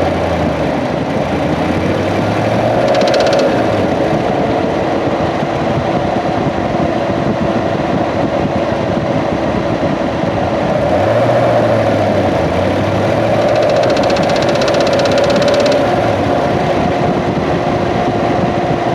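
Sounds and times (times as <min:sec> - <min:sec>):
mechanical noise from engine: 0:00.0 - 0:06.5, 0:10.6 - 0:18.9
car engine running: 0:00.0 - 0:18.9.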